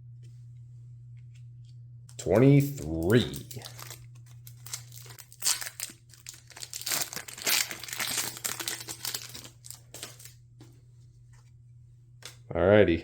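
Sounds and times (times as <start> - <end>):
foil wrapper crinkling and tearing: 2.4 - 10.3.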